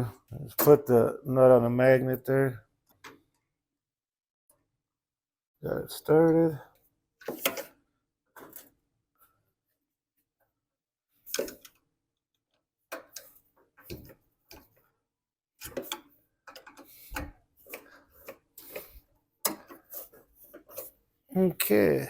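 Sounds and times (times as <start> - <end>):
hand tools clicking and scraping metal: 15.6 - 21.8.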